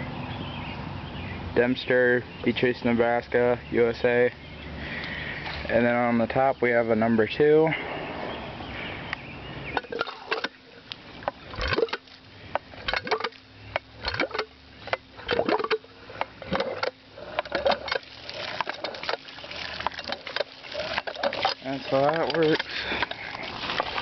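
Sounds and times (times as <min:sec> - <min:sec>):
hand pump clunking and clicking: 0:09.8 - 0:10.6, 0:11.2 - 0:24.0.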